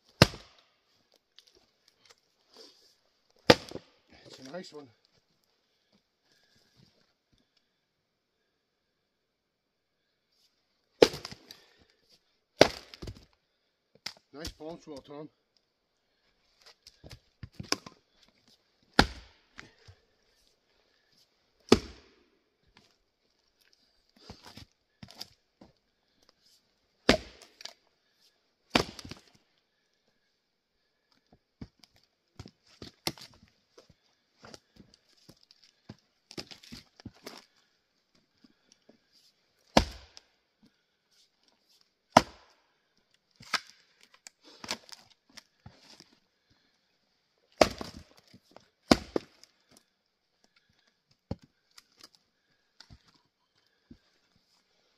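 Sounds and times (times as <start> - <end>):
axe splitting firewood: 0.1 - 0.6, 3.4 - 4.5, 11.0 - 11.9, 12.6 - 13.3, 16.6 - 18.1, 18.9 - 20.0, 21.6 - 22.2, 24.1 - 25.7, 27.0 - 27.9, 28.7 - 29.4, 31.6 - 33.4, 34.4 - 37.6, 39.6 - 40.2, 42.1 - 42.6, 43.4 - 46.1, 47.5 - 49.8
axe chopping wood: 0.2 - 0.6, 3.5 - 3.9, 11.0 - 11.6, 12.6 - 13.2, 17.5 - 18.0, 19.0 - 19.4, 21.7 - 22.2, 27.0 - 27.8, 28.7 - 29.3, 39.7 - 40.2, 42.1 - 42.6, 47.6 - 48.2, 48.9 - 49.5.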